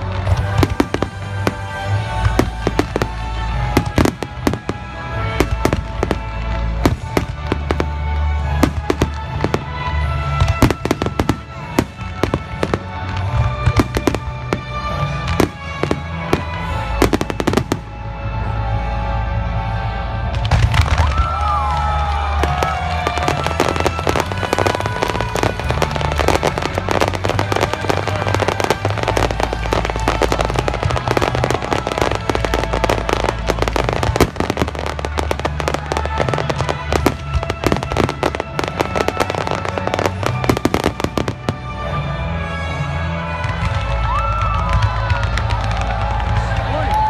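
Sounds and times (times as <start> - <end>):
fireworks crackles and bangs: 0.0 - 18.5, 19.9 - 47.0
music playing: 0.0 - 47.0.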